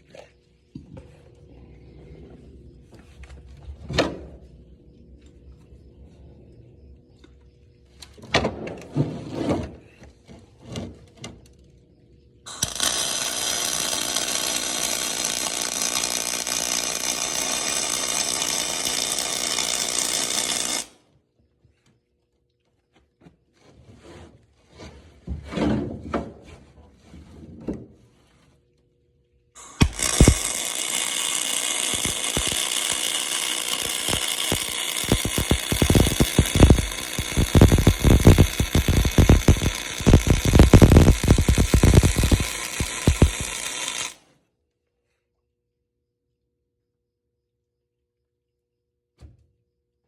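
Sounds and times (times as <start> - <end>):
welder arc crackling hiss: 12.5 - 20.9, 29.6 - 44.2.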